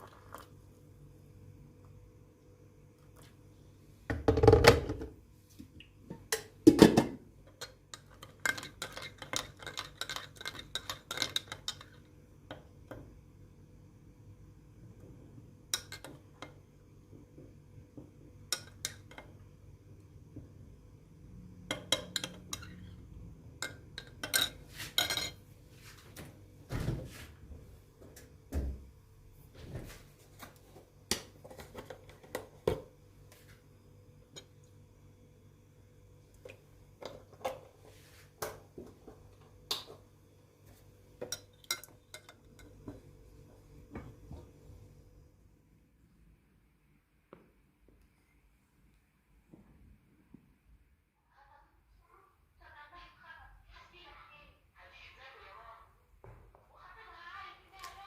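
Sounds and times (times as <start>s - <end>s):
dishes and cutlery clinking: 23.6s - 25.4s, 41.2s - 43.0s.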